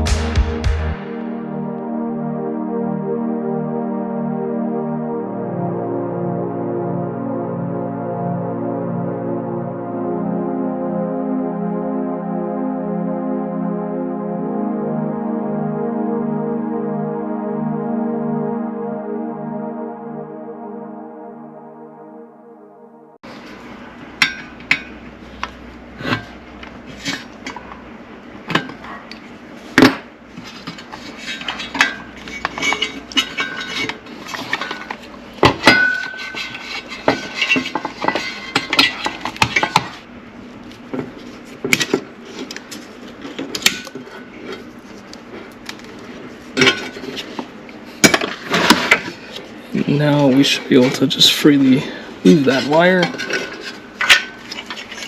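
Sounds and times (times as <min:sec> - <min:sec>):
music: 0:00.0 - 0:23.3.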